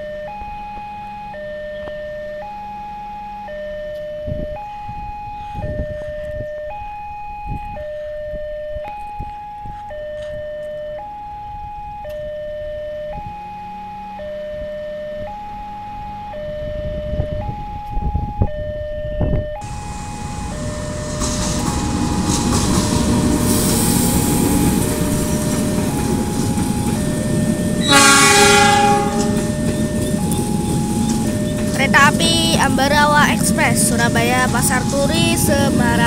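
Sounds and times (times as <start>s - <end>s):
two-tone crossing warning siren: 0.0s - 36.0s
rushing noise: 19.6s - 36.0s
train horn blast: 19.7s - 31.7s.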